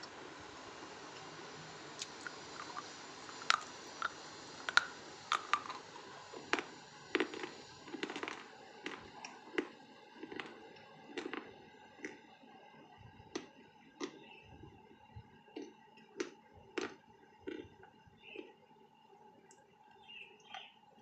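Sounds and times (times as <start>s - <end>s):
crunchy food chewing: 2.0s - 12.4s, 13.3s - 14.4s, 15.5s - 18.6s.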